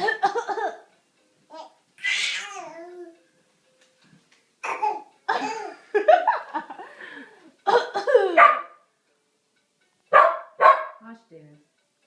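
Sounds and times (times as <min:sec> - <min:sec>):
child fake coughing: 0:04.6 - 0:05.8, 0:07.7 - 0:08.5.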